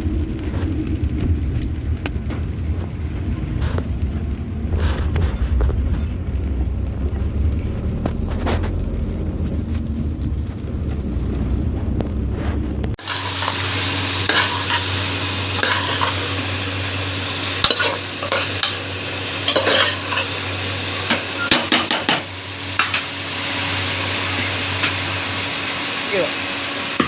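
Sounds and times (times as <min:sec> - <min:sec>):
low rumble: 0:00.0 - 0:21.4
food sizzling in pan: 0:00.0 - 0:27.0
spoon scraping pan: 0:13.0 - 0:16.5, 0:17.4 - 0:23.1.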